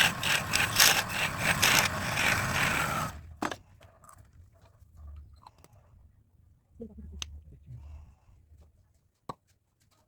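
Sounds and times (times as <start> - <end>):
hand tool rasping on wood: 0.0 - 3.2.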